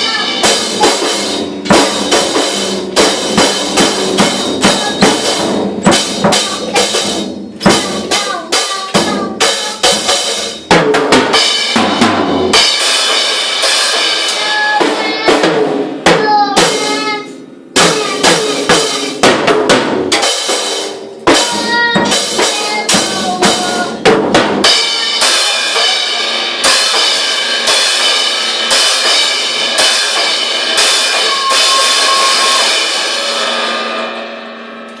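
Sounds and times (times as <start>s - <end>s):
bass drum hits: 0.0s - 8.3s
cymbals ringing: 24.6s - 35.0s
snare drum hits: 29.8s - 33.0s.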